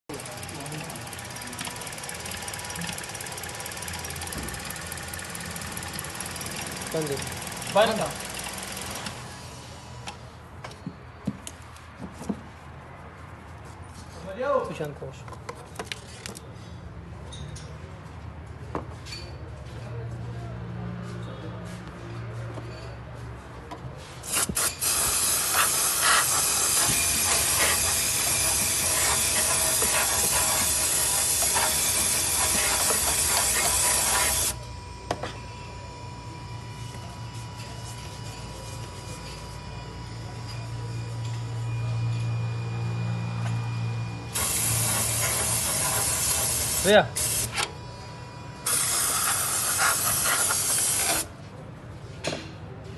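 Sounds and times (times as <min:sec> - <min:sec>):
pressurised air jet hissing: 0:24.3 - 0:34.5, 0:44.4 - 0:47.5, 0:48.7 - 0:51.3.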